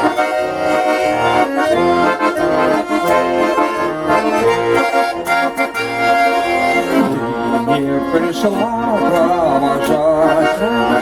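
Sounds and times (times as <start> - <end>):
accordions playing together: 0.0 - 11.0.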